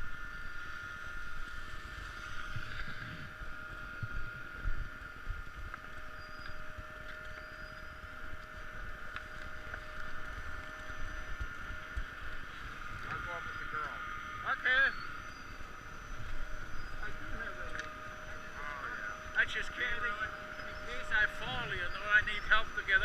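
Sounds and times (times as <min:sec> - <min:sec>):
faint steady whine: 0:00.0 - 0:23.0
wind buffeting microphone: 0:21.2 - 0:22.3.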